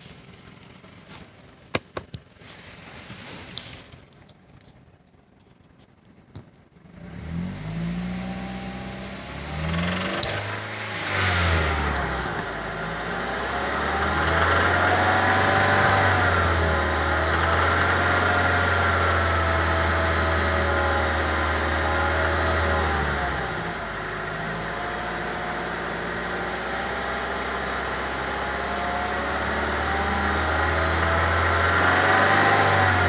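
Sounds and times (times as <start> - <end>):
car engine revving: 6.9 - 33.0.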